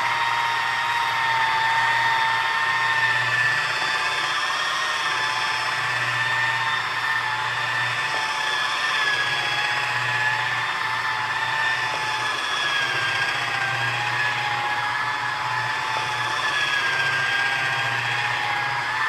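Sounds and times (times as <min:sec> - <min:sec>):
electric buffer motor whine: 0:00.0 - 0:19.0.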